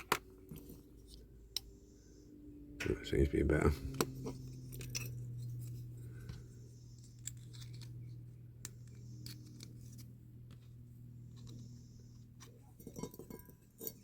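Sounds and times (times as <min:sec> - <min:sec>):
steady low hum: 0:00.0 - 0:14.0
hand tools clicking and scraping: 0:03.8 - 0:10.2, 0:11.2 - 0:14.0.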